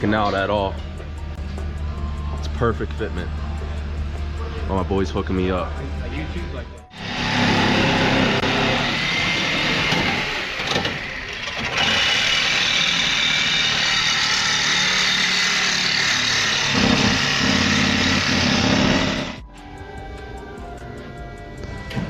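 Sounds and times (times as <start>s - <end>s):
motor running with hiss and hum: 6.9s - 19.4s.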